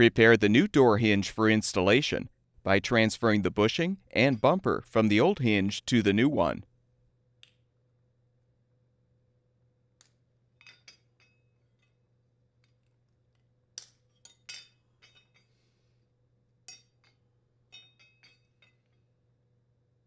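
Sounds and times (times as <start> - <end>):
light metallic clinks: 16.7 - 19.1.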